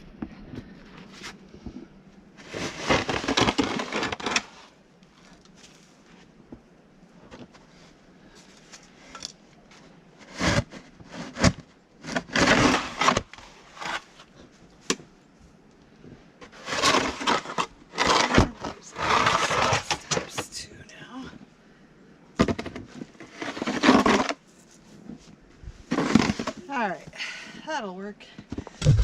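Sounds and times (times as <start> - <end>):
shovel scraping snow: 2.4 - 4.8, 10.2 - 14.3, 16.4 - 20.5, 22.9 - 25.3, 25.9 - 26.9.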